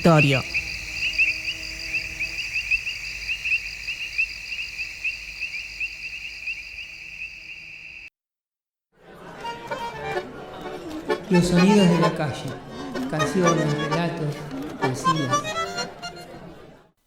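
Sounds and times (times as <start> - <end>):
crickets chirping: 0.0 - 8.1.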